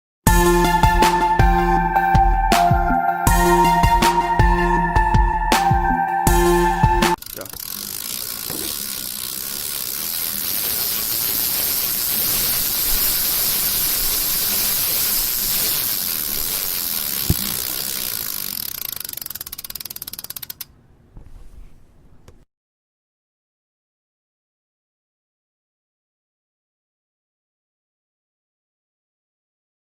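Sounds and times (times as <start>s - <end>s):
bicycle chain whirring and ticking: 7.1s - 20.7s.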